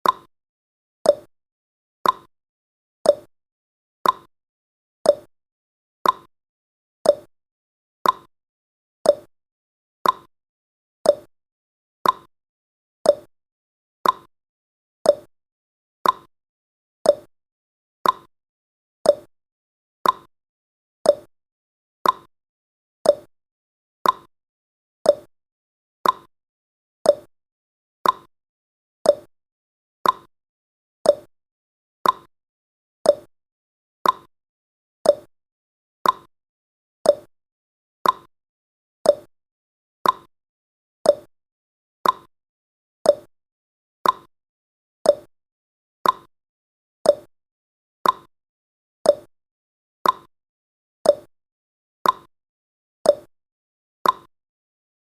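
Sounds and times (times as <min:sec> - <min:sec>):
clock tick-tock: 0:00.0 - 0:00.3, 0:01.1 - 0:01.3, 0:02.0 - 0:02.3, 0:03.1 - 0:03.3, 0:04.0 - 0:04.3, 0:05.1 - 0:05.3, 0:06.0 - 0:06.3, 0:07.0 - 0:07.3, 0:08.0 - 0:08.3, 0:09.1 - 0:09.3, 0:10.0 - 0:10.3, 0:11.1 - 0:11.3, 0:12.0 - 0:12.3, 0:13.0 - 0:13.3, 0:14.0 - 0:14.3, 0:15.0 - 0:15.3, 0:16.0 - 0:16.3, 0:17.0 - 0:17.3, 0:18.0 - 0:18.3, 0:19.0 - 0:19.3, 0:20.0 - 0:20.3, 0:21.0 - 0:21.3, 0:22.0 - 0:22.3, 0:23.0 - 0:23.3, 0:24.0 - 0:24.3, 0:25.0 - 0:25.3, 0:26.0 - 0:26.3, 0:27.0 - 0:27.3, 0:28.0 - 0:28.3, 0:29.0 - 0:29.3, 0:30.0 - 0:30.3, 0:31.0 - 0:31.3, 0:32.0 - 0:32.3, 0:33.0 - 0:33.3, 0:34.0 - 0:34.3, 0:35.0 - 0:35.3, 0:36.0 - 0:36.3, 0:37.0 - 0:37.3, 0:38.0 - 0:38.3, 0:39.0 - 0:39.3, 0:40.0 - 0:40.3, 0:41.0 - 0:41.3, 0:42.0 - 0:42.3, 0:43.0 - 0:43.3, 0:44.0 - 0:44.3, 0:45.1 - 0:45.3, 0:46.0 - 0:46.3, 0:47.0 - 0:47.3, 0:48.0 - 0:48.3, 0:49.0 - 0:49.3, 0:50.0 - 0:50.3, 0:51.0 - 0:51.3, 0:52.0 - 0:52.3, 0:53.1 - 0:53.3, 0:54.0 - 0:54.3.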